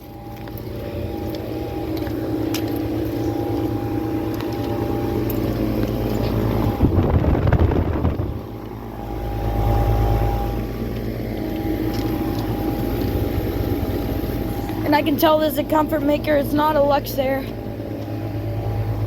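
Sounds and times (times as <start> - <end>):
deep low rumble: 0.0 - 16.9
air conditioner units humming: 0.0 - 19.0
wind buffeting microphone: 5.1 - 10.4.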